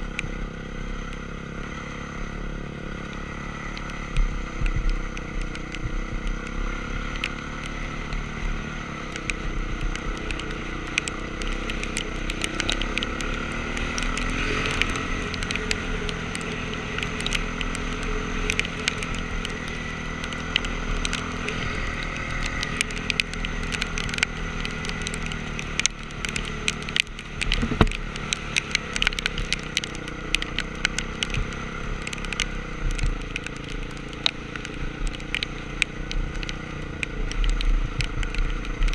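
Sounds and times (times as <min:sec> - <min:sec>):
motorcycle engine running: 0:00.0 - 0:38.9
sharp clicks: 0:09.0 - 0:38.9.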